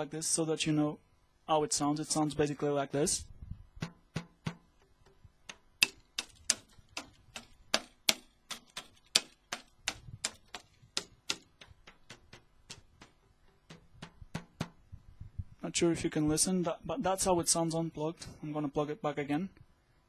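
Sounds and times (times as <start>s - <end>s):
drumsticks clicking on pads: 4.8s - 14.8s.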